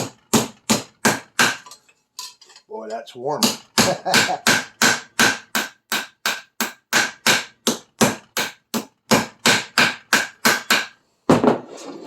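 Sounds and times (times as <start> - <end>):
hammer on metal: 0.0 - 1.8, 3.4 - 11.4.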